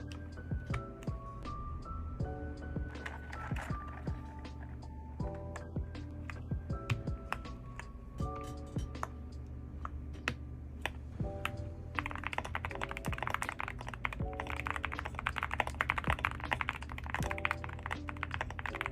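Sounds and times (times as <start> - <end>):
background music: 0.0 - 18.9
mechanical keyboard typing: 2.9 - 4.3, 12.0 - 18.9.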